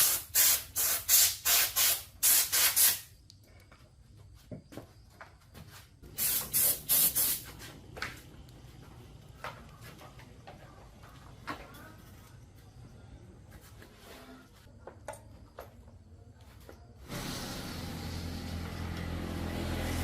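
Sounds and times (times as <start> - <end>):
hissing spray bursts: 0.0 - 3.2, 6.0 - 7.7, 17.1 - 18.6.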